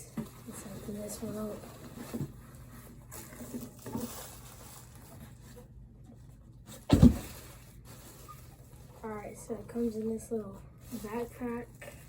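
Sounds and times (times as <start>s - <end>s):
packaging rustling: 0.2s - 5.6s
loud thump: 6.9s - 7.4s.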